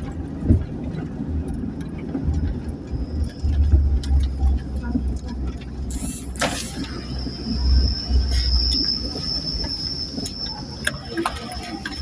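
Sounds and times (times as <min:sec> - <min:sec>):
vehicle rumble: 0:00.0 - 0:12.0
high-pitched squeal: 0:05.9 - 0:12.0.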